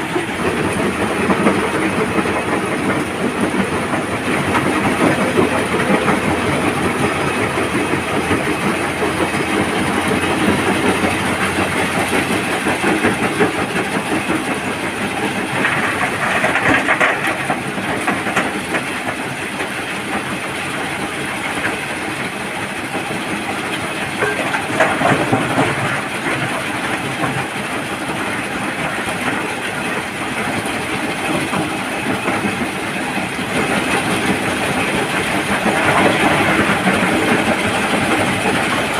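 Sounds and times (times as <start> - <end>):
engine noise: 0.0 - 38.9
stone crusher rattling: 24.2 - 25.8.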